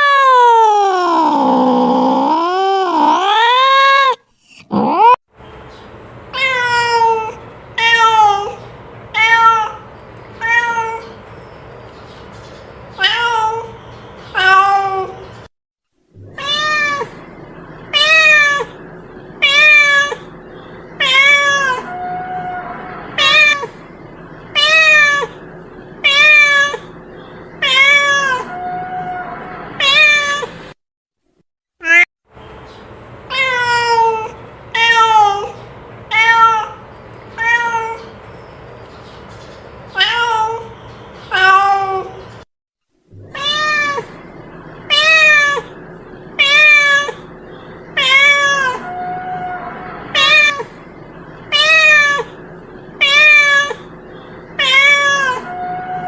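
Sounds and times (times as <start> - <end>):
cat meowing loudly: 16.3 - 17.1, 19.4 - 20.2, 21.0 - 23.7, 24.6 - 25.4, 26.0 - 26.9, 27.6 - 30.6, 43.2 - 44.2, 46.4 - 47.2, 48.0 - 50.7, 51.5 - 52.4, 53.0 - 53.9, 54.6 - 56.0.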